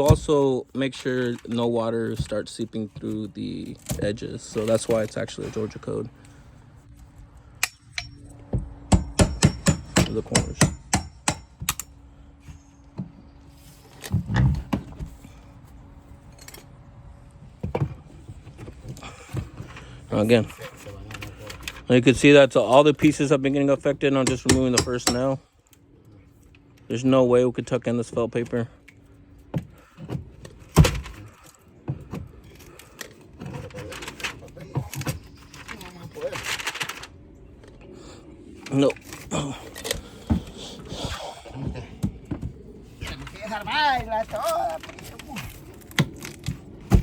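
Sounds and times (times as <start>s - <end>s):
siding being pried from wall: 8.4s - 11.8s, 24.1s - 25.4s, 29.5s - 37.1s, 44.0s - 47.0s.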